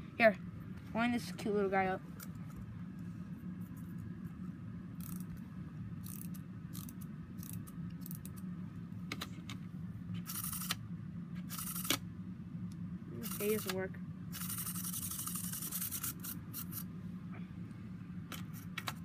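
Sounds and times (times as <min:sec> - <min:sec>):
steady low hum: 0:00.0 - 0:19.0
wind-up toy ratchet clicks: 0:05.0 - 0:05.3, 0:06.0 - 0:08.4, 0:10.2 - 0:10.8, 0:11.5 - 0:12.0, 0:13.2 - 0:16.8.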